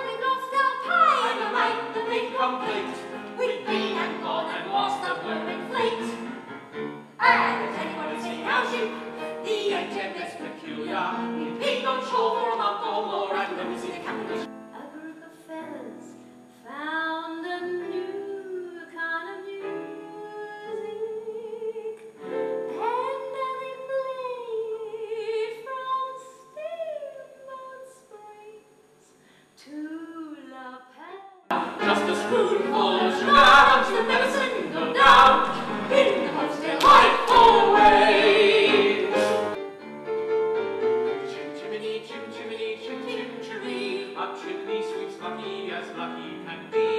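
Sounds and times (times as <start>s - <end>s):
woman singing classical style: 0.0s - 2.7s, 14.7s - 28.7s, 29.6s - 35.0s
piano accompaniment: 0.8s - 14.7s, 31.5s - 46.9s.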